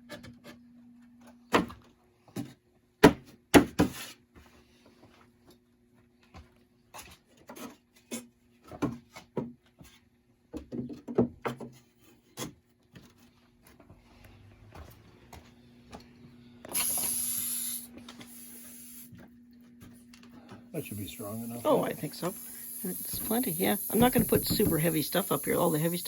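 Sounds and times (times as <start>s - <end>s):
short hiss: 16.7s - 19.1s, 20.8s - 26.0s
wooden boards knocking and scraping: 23.1s - 25.0s.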